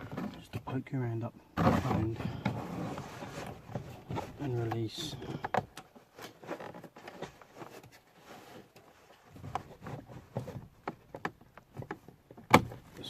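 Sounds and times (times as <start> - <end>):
light plastic clicks and knocks: 3.7 - 7.9, 8.7 - 13.0.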